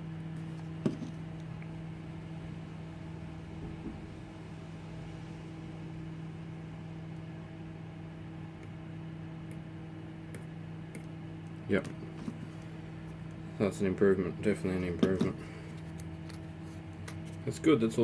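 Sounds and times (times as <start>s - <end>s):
low electrical hum: 0.0s - 18.0s.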